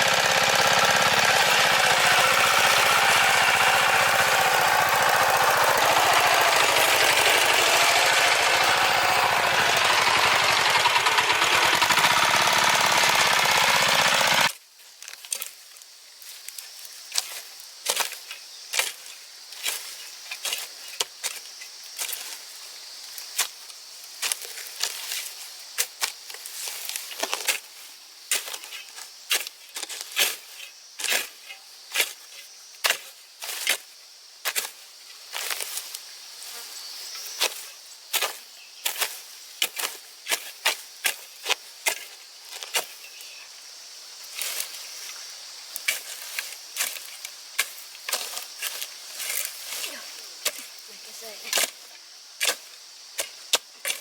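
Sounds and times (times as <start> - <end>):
insects trilling: 14.8 - 54.0.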